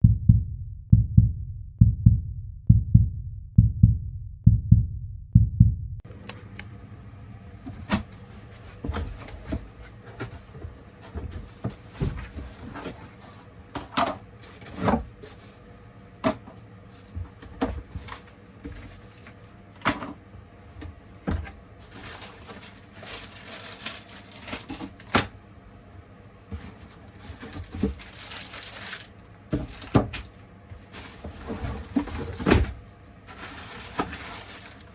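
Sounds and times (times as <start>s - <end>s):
low regular beat: 0.0s - 6.0s.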